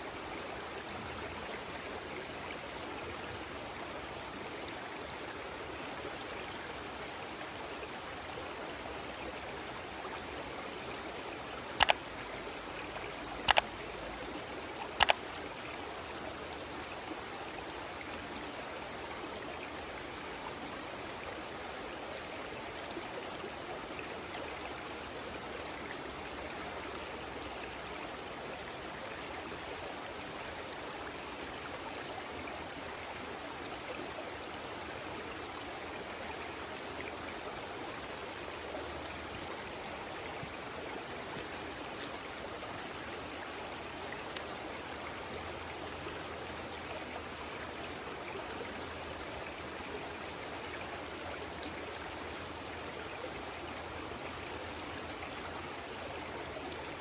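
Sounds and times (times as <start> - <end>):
stream running: 0.0 - 57.0
sharp clicks: 11.8 - 12.0, 13.4 - 13.7, 14.9 - 15.2.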